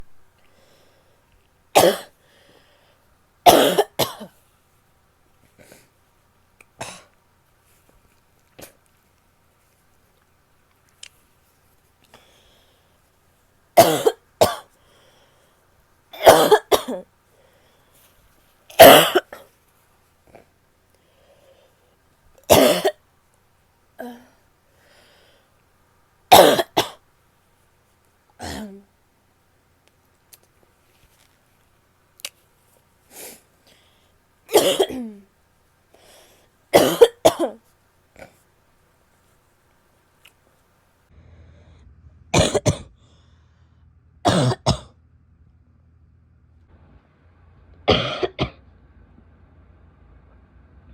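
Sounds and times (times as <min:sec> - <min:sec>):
woman coughing: 0:01.8 - 0:02.1, 0:03.5 - 0:04.3, 0:06.8 - 0:07.1, 0:13.8 - 0:14.7, 0:16.2 - 0:17.1, 0:18.8 - 0:19.4, 0:22.5 - 0:23.0, 0:26.3 - 0:27.0, 0:28.4 - 0:28.8, 0:34.5 - 0:35.2, 0:36.8 - 0:37.6, 0:42.4 - 0:42.9, 0:44.3 - 0:44.9, 0:47.9 - 0:48.6.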